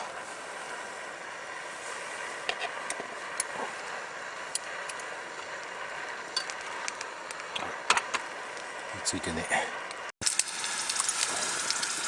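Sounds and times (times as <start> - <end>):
patty sizzling in a pan: 10.2 - 12.0.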